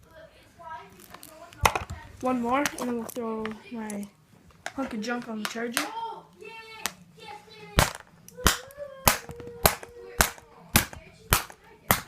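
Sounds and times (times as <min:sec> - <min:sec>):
tablet struck with cracking blows: 0:07.8 - 0:12.0.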